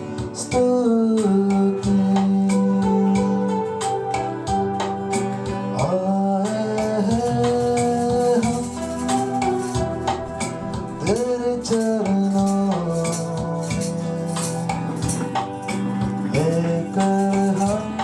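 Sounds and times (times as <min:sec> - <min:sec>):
sliding melody: 0:00.9 - 0:18.0
rattling percussion: 0:06.5 - 0:18.0.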